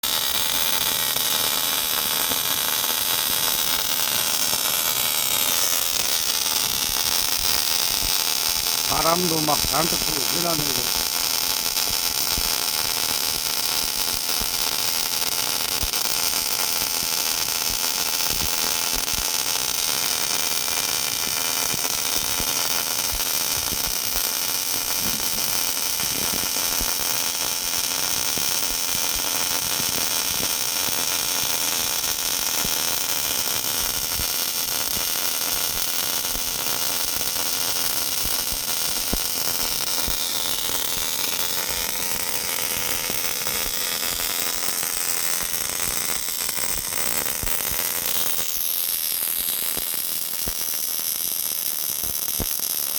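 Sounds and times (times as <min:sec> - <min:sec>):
welder hissing and whining: 0:00.1 - 0:52.9.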